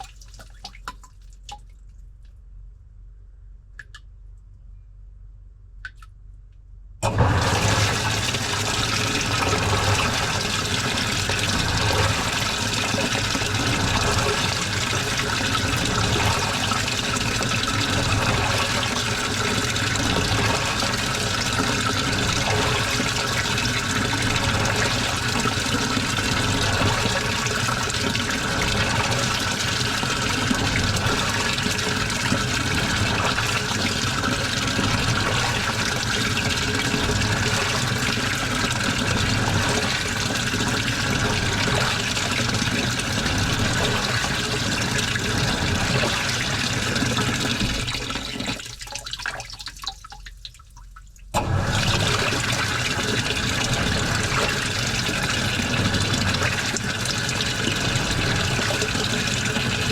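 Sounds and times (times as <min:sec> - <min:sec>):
water rushing into drum: 0:00.0 - 0:01.8, 0:07.0 - 0:59.9
faint water drips: 0:00.0 - 0:02.4, 0:48.6 - 0:51.4.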